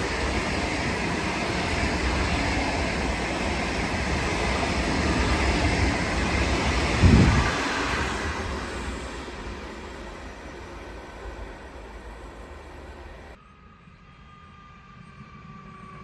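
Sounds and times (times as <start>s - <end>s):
train wheels rolling on rails: 0.0s - 13.4s.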